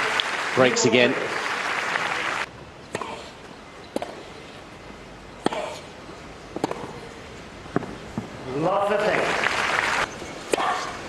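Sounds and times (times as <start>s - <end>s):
applause: 0.0s - 2.5s, 9.0s - 10.1s
tennis ball bouncing on grass: 3.9s - 4.3s, 6.5s - 7.0s.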